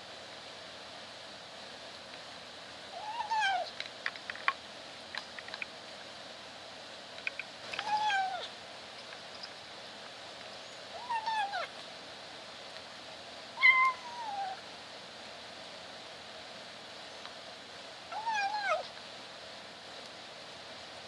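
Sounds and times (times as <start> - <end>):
kitten meowing while eating: 3.0 - 3.7, 7.8 - 8.5, 11.0 - 11.7, 13.6 - 14.6, 18.1 - 18.9.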